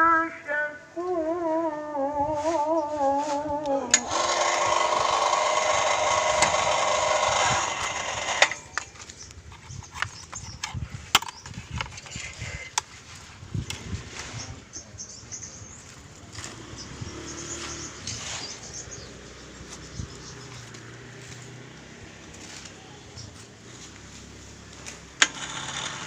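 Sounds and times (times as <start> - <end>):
singing music: 0.0 - 4.1
motorised machine running: 3.9 - 9.0, 24.8 - 26.0.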